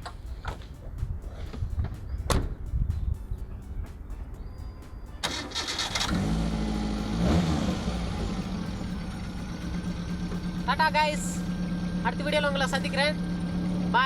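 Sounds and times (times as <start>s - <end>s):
car engine idling: 0.0s - 14.0s
car engine cranking: 5.1s - 14.0s.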